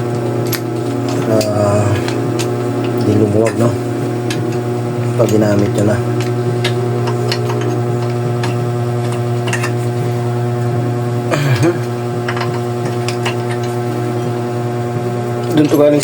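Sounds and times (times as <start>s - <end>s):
low hum: 0.0s - 16.0s
parts rattling: 0.1s - 10.3s.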